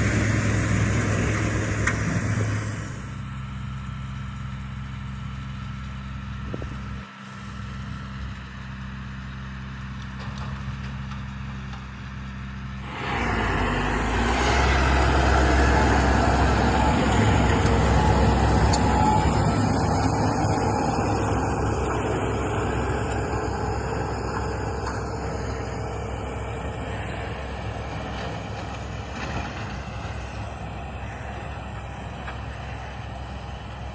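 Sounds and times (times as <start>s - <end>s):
vehicle engine running: 0.0s - 33.9s.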